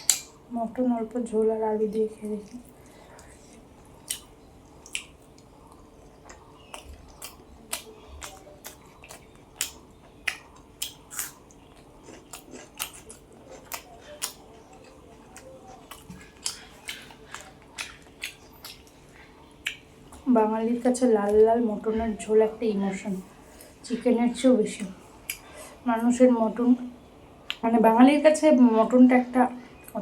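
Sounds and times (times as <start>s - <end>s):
close chewing with mouth clicks: 0.0s - 0.4s, 1.8s - 20.3s, 27.4s - 27.7s
lip smacks: 0.0s - 0.4s, 2.4s - 20.2s.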